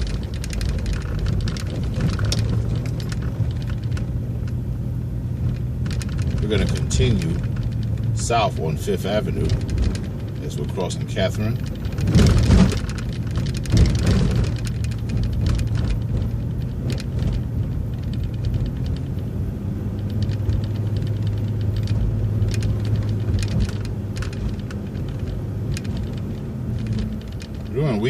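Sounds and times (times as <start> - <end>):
bus engine drone: 0.0 - 28.0
bus jolts: 0.0 - 28.0
rattling and clicking: 0.0 - 28.0.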